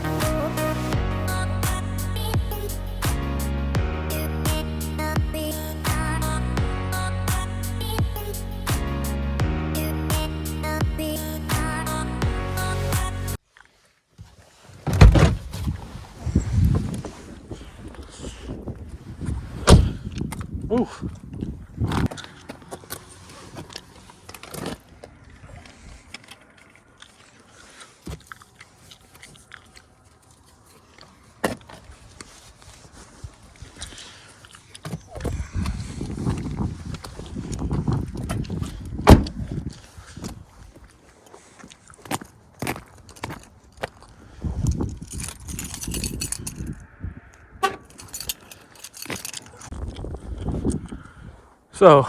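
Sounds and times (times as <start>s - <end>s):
loud thump: 14.8s - 15.7s, 19.7s - 20.0s, 39.1s - 39.4s
wind buffeting microphone: 14.9s - 22.1s, 35.2s - 40.7s, 44.2s - 48.3s, 49.6s - 51.5s.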